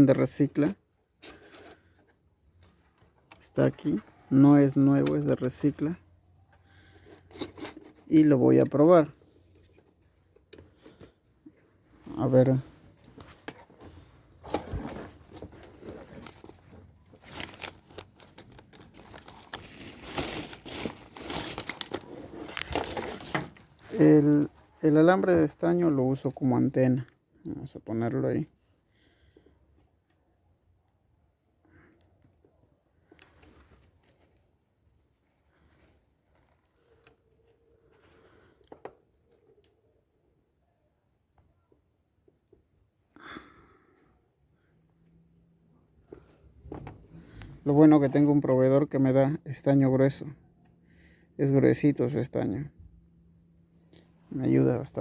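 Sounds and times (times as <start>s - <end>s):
parts and wire crinkling: 0.2s - 27.5s, 31.6s - 39.7s.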